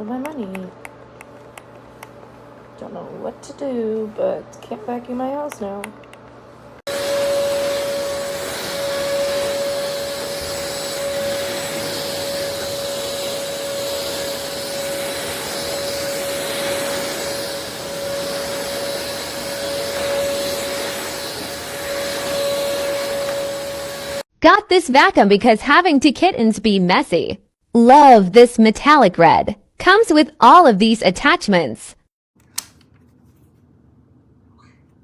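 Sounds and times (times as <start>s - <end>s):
stick vacuum running: 0.0s - 24.2s.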